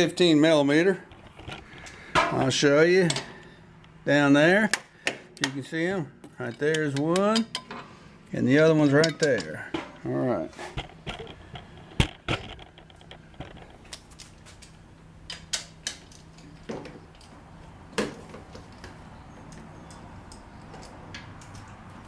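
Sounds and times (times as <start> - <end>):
hand tools clicking and clanking: 1.1 - 3.5, 6.2 - 8.0, 8.7 - 17.4, 18.1 - 22.0.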